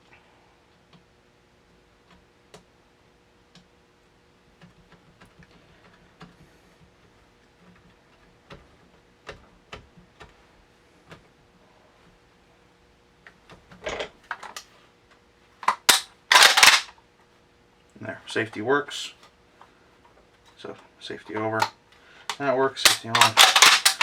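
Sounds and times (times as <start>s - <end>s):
shotgun parts clicking: 15.6s - 16.9s, 22.3s - 24.0s.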